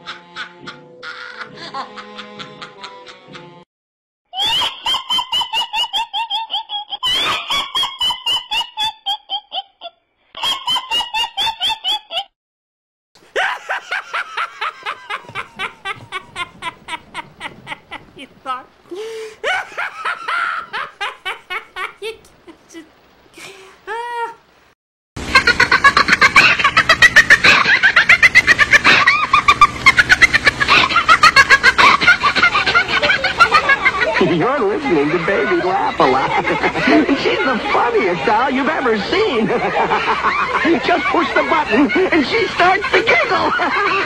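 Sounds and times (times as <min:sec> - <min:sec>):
evil laugh: 0:00.0 - 0:03.6, 0:04.3 - 0:12.3, 0:13.2 - 0:24.4, 0:25.2 - 0:37.9, 0:39.3 - 0:44.0
high-pitched witch's cackle: 0:00.0 - 0:03.6, 0:04.3 - 0:12.3, 0:13.2 - 0:24.4, 0:25.2 - 0:34.2, 0:39.4 - 0:44.0
doll giggling high-pitched: 0:04.4 - 0:12.2, 0:19.4 - 0:23.0.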